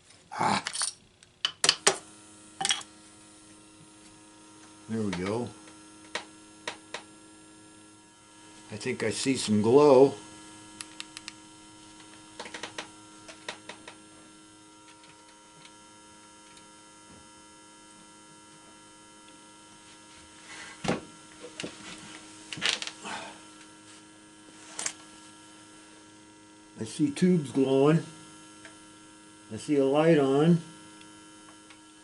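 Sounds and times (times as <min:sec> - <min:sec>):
car radio electrical hum: 0:00.0 - 0:32.0.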